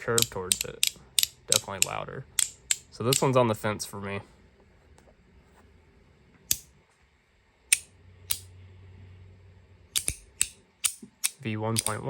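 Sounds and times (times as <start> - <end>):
magnetic slider metal clicks: 0.1 - 3.3, 10.0 - 12.0.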